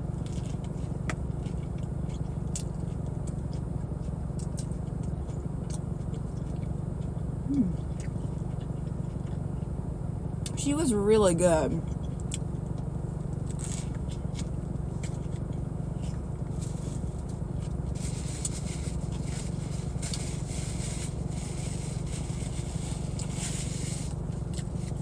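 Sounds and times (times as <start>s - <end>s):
idling car rumble: 0.0s - 25.0s
eating crackling and scraping: 11.8s - 25.0s.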